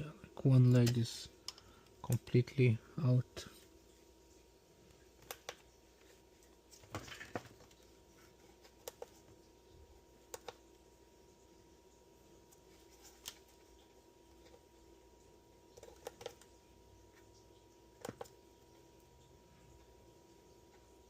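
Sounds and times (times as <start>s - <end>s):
low steady hum: 0.0s - 21.0s
faint clicks and light taps: 8.5s - 9.5s, 10.3s - 10.7s.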